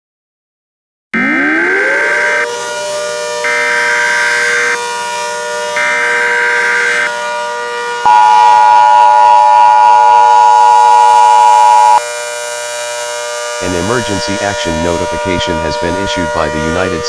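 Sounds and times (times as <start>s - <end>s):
buzzing data bursts: 8.1s - 12.0s
two-tone attention signal: 8.1s - 12.0s.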